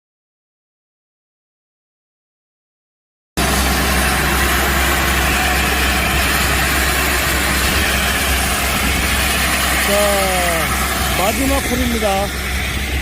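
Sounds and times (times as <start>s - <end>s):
core drill mechanical noise: 3.4s - 13.0s
excavator engine and hydraulics hum: 3.4s - 13.0s.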